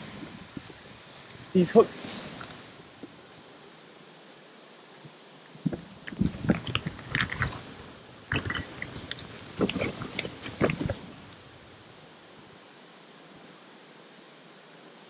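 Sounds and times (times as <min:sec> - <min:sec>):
rustling with clicks and knocks: 0:05.6 - 0:11.4.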